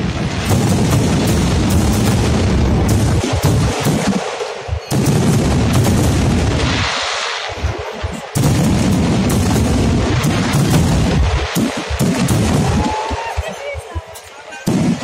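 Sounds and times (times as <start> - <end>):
fireworks booming: 0.0 - 15.0
hissing crackle: 0.0 - 15.0.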